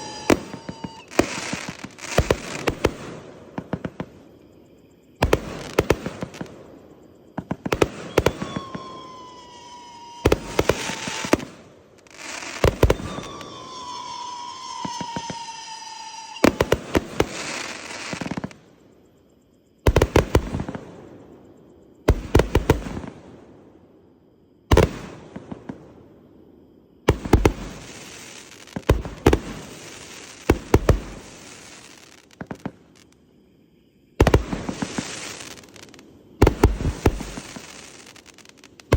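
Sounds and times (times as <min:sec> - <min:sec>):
fireworks bangs: 0:00.0 - 0:04.2, 0:07.4 - 0:18.6, 0:34.2 - 0:38.9
fireworks crackle: 0:00.0 - 0:04.2, 0:07.4 - 0:18.6, 0:27.1 - 0:33.2, 0:34.2 - 0:38.9
whistling fireworks: 0:00.0 - 0:38.9.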